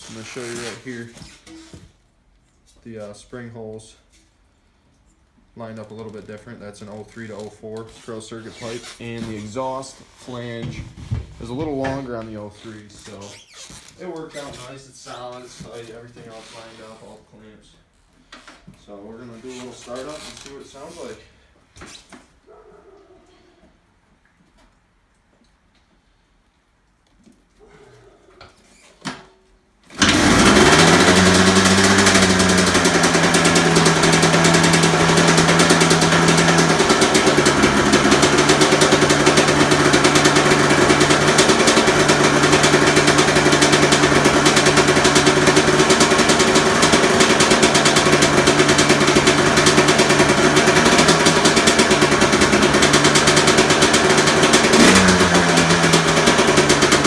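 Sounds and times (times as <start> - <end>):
dirt bike engine idling: 30.0 - 57.0.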